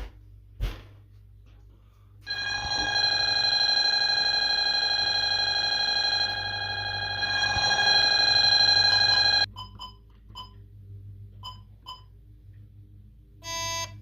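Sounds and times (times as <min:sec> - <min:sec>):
alarm sounder steady tone: 0:02.3 - 0:10.6, 0:13.4 - 0:14.0.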